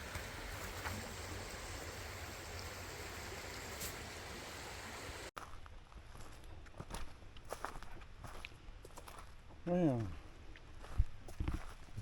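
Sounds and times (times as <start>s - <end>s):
creek water rushing: 0.0s - 5.3s.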